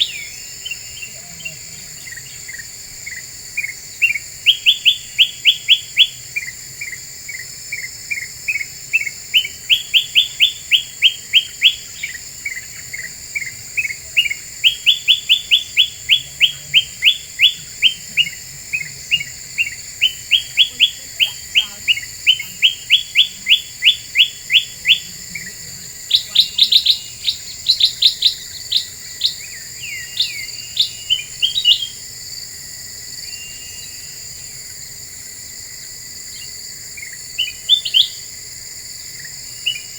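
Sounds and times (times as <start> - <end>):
bulbul calling: 0.0 - 6.6, 8.5 - 32.0
high insect drone: 0.0 - 39.9.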